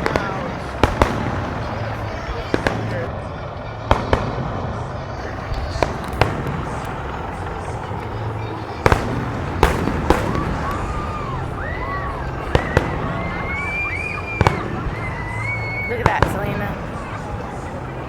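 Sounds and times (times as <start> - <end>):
fireworks bangs: 0.0 - 18.0
rumble of distant shells: 5.2 - 18.0.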